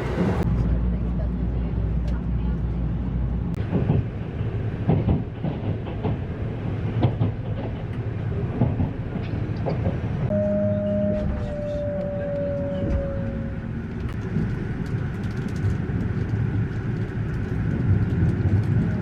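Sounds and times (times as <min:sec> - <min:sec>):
train rumbling: 0:00.0 - 0:19.0
wheels clacking over rail joints: 0:04.8 - 0:10.3.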